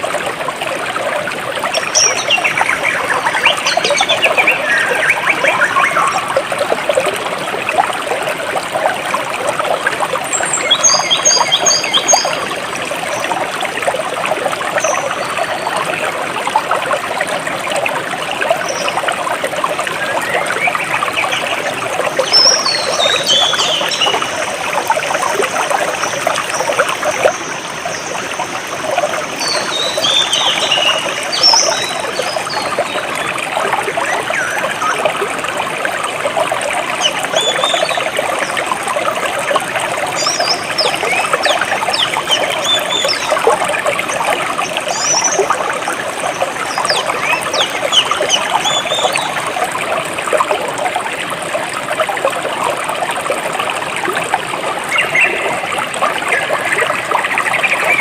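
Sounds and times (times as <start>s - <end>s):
stream trickling over stones: 0.0s - 58.0s
birds chirping: 1.7s - 6.5s, 10.3s - 13.3s, 20.0s - 24.6s, 29.2s - 33.3s, 46.4s - 49.4s.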